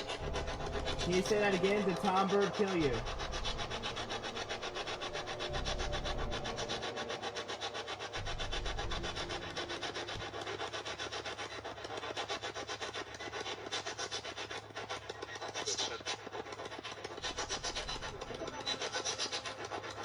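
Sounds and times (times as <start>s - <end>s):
radio static sweeping: 0.0s - 10.8s.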